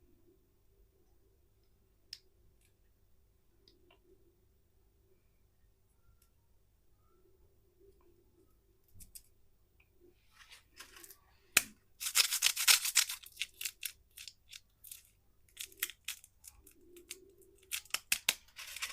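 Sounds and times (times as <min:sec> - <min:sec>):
plastic wrapper tearing and crinkling: 0:12.0 - 0:18.9.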